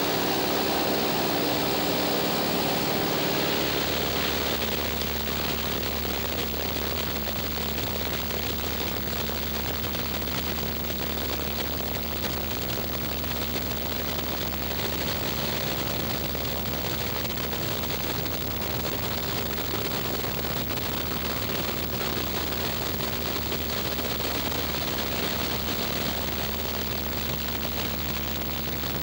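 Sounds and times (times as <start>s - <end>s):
air hissing over airframe: 0.0s - 5.3s
propeller plane engine droning: 0.0s - 28.9s.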